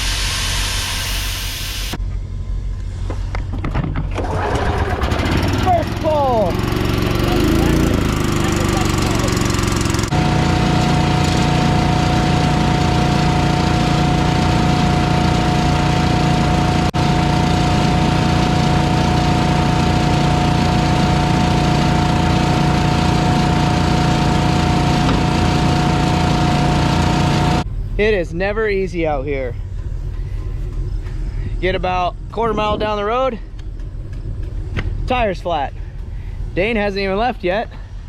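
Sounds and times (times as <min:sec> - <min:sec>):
farm machinery engine whining: 0:04.2 - 0:27.6.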